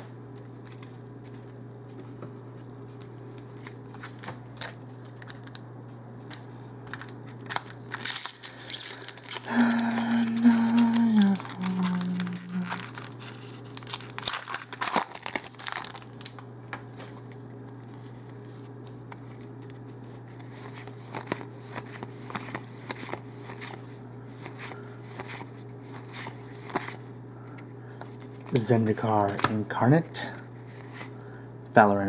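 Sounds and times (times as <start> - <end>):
foil wrapper crinkling and tearing: 3.4 - 5.6, 6.3 - 27.0.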